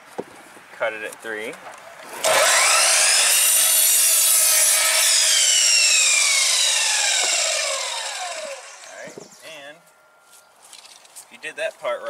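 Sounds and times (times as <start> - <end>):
miter saw motor whining: 2.0 - 9.5.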